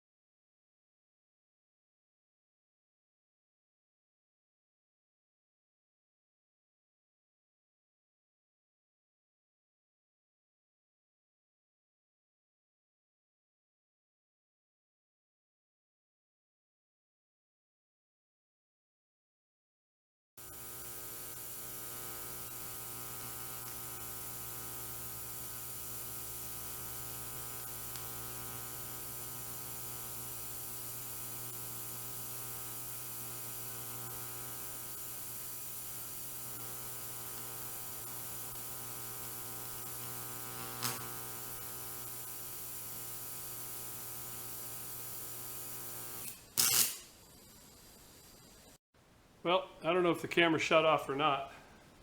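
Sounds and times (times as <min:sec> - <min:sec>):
welding arc buzzing hum: 0:20.4 - 0:48.8.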